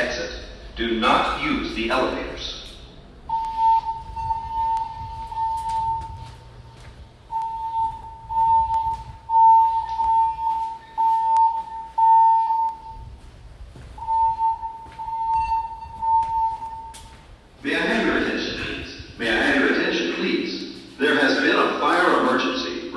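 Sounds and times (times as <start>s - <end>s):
fire alarm beeping: 0.0s - 22.9s.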